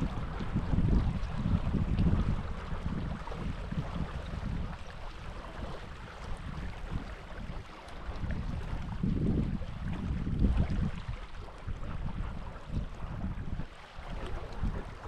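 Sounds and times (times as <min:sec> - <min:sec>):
stream water running: 0:00.0 - 0:15.0
wind buffeting microphone: 0:00.0 - 0:15.0.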